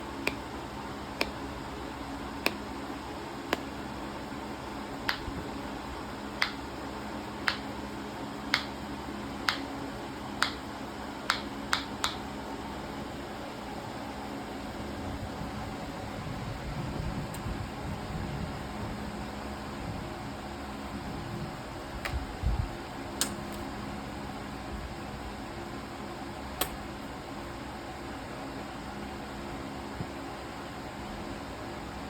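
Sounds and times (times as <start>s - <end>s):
parrot clicking its beak: 0.2s - 0.5s, 5.1s - 5.3s, 6.4s - 6.6s, 7.4s - 7.7s, 8.5s - 8.7s, 9.4s - 9.6s, 10.4s - 10.6s, 11.3s - 12.2s, 26.6s - 26.8s.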